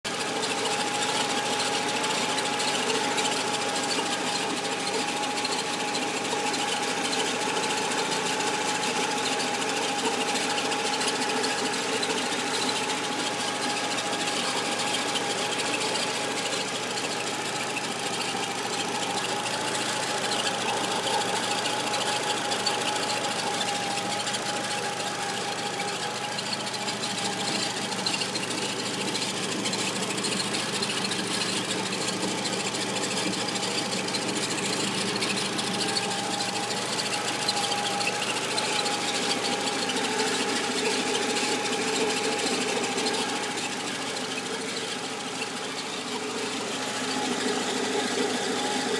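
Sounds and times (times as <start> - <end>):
car engine running: 0.0 - 48.9
steady whine: 0.1 - 48.9.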